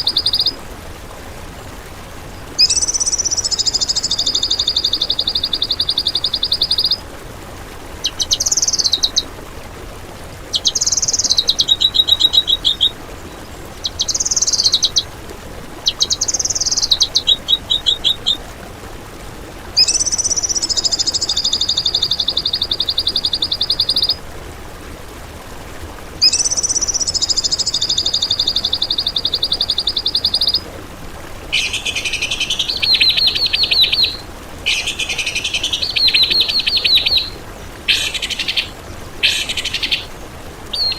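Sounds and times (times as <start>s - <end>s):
songbird trilling: 0.0s - 0.6s, 2.6s - 7.0s, 8.0s - 9.2s, 10.5s - 13.0s, 13.7s - 15.1s, 15.8s - 18.4s, 19.8s - 24.2s, 26.2s - 30.6s, 31.5s - 40.9s.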